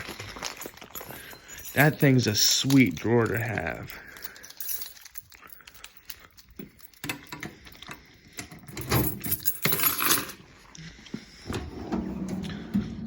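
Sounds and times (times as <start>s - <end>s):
tools rattling and clinking: 0.0s - 10.7s
metal drawers sliding: 11.4s - 13.0s.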